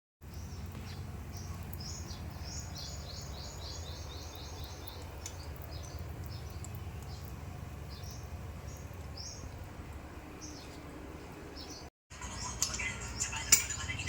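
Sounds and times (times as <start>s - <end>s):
small bird chirping: 0.3s - 9.6s.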